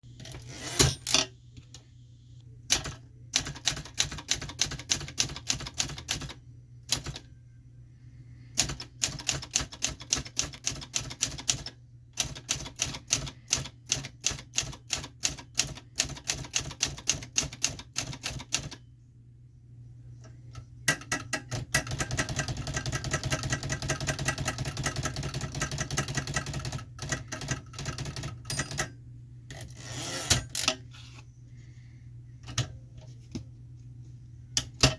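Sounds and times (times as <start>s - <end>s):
manual typewriter typing: 2.7s - 7.2s, 8.6s - 18.8s, 20.9s - 28.9s.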